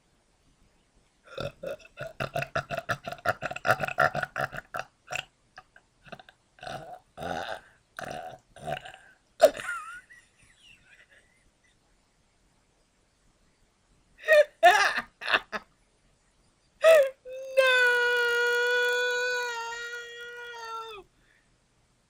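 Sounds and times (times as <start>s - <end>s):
person belching: 1.3s - 9.7s.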